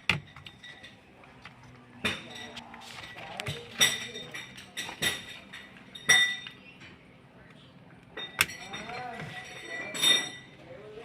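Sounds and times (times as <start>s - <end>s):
metal tools clinking: 0.0s - 1.1s, 2.0s - 7.0s, 8.2s - 10.6s.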